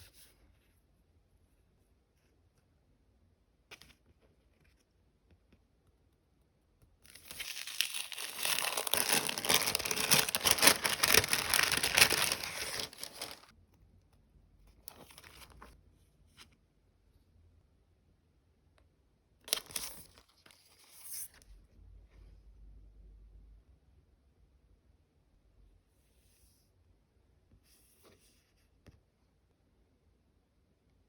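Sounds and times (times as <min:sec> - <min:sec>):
plastic packaging crinkling: 0:07.1 - 0:13.5.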